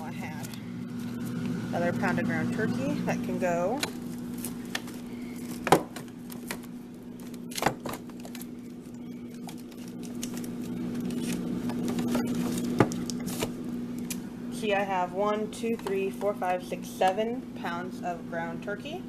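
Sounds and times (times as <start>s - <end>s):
freezer hum: 0.0s - 19.0s
packaging rustling: 4.0s - 14.2s.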